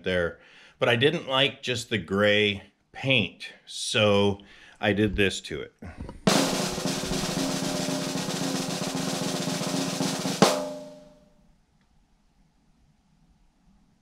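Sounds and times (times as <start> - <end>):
loud ringing drum hit: 6.3 - 11.1
snare drum roll: 6.3 - 11.2.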